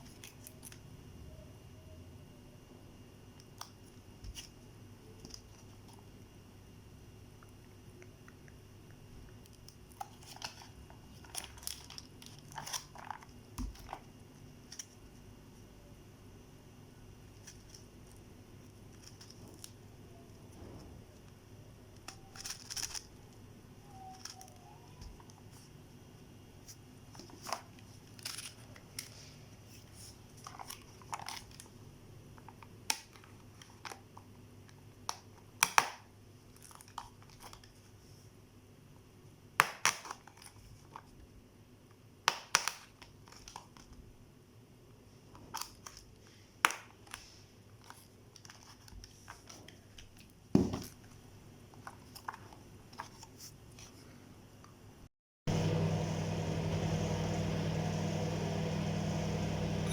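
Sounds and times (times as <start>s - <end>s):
microwave oven humming: 0.8s - 9.8s, 55.5s - 59.9s
plastic packaging crinkling: 9.4s - 15.0s, 22.0s - 23.3s.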